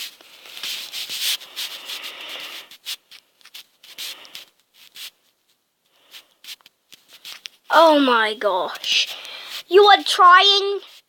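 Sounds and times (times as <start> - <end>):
rubbing noises: 0.0 - 11.0
soft rustling hiss: 0.0 - 11.0.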